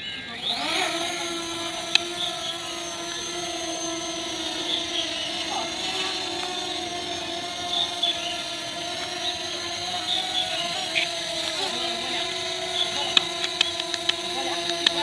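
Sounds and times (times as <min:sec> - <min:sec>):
drone motors whining: 0:00.0 - 0:15.0
sharp click: 0:13.1 - 0:15.0.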